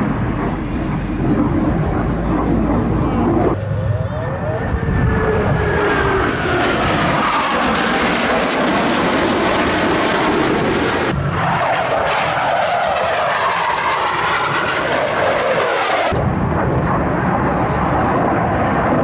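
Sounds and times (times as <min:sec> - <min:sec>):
jet flying past: 0:00.0 - 0:19.0.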